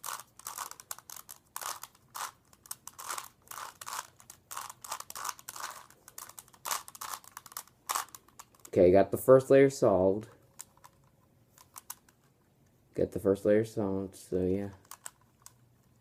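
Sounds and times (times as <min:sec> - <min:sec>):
puzzle cube layers clicking: 0:00.0 - 0:08.7, 0:10.5 - 0:12.3, 0:14.6 - 0:16.0.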